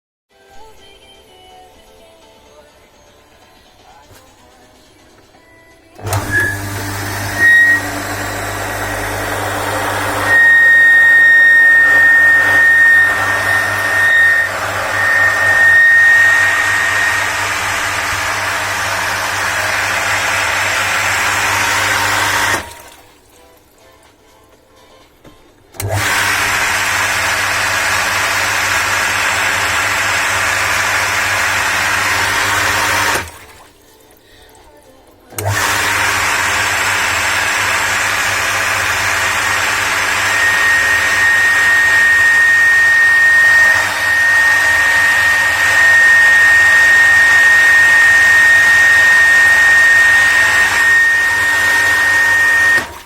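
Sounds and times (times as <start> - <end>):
electric water pump running: 6.0 - 24.1, 25.7 - 34.0, 35.3 - 53.0
high-pitched whistle: 7.4 - 8.1, 10.1 - 17.2.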